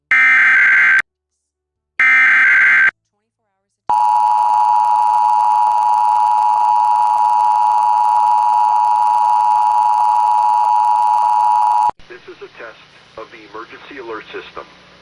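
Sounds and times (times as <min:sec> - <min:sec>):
two-tone alarm: 0:00.1 - 0:01.0, 0:02.0 - 0:02.9, 0:03.9 - 0:11.9.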